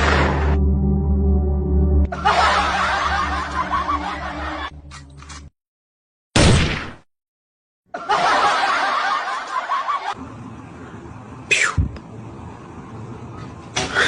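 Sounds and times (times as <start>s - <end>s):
people laughing: 2.1s - 4.8s, 7.9s - 10.2s.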